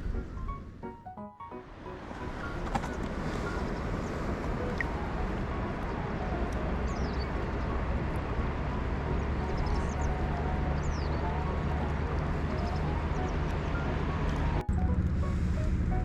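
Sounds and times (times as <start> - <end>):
steady rushing outdoor noise: 0.0 - 16.0.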